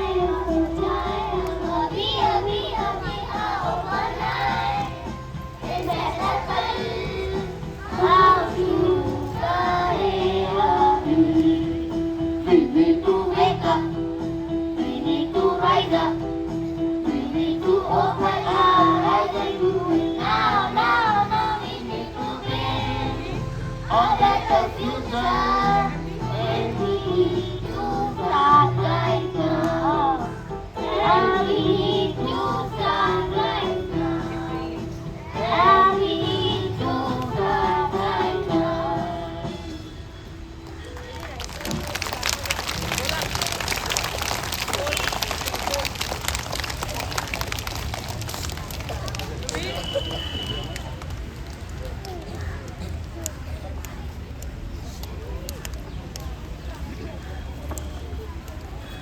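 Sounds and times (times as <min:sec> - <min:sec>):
children singing: 0:00.0 - 0:11.4, 0:17.4 - 0:34.8, 0:35.4 - 0:39.7.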